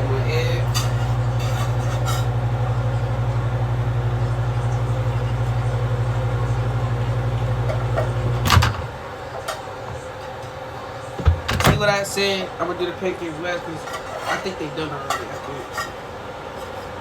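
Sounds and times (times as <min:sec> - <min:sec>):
microwave oven humming: 0:00.0 - 0:17.0
microwave click: 0:02.8 - 0:10.1.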